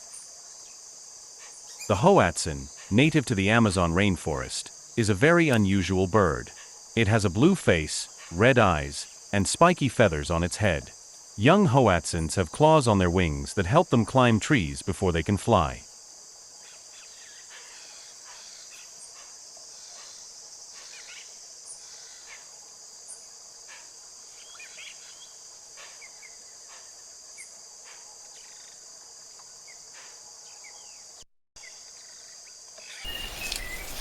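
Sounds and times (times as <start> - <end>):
high-pitched insect chorus: 0.0 - 34.0
short insect chirps: 29.5 - 34.0.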